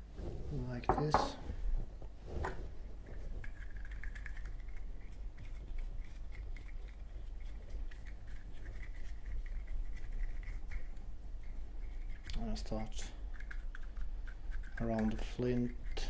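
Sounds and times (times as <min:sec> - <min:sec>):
steady low hum: 0:00.0 - 0:16.0
cotton swab scratching metal: 0:03.4 - 0:16.0.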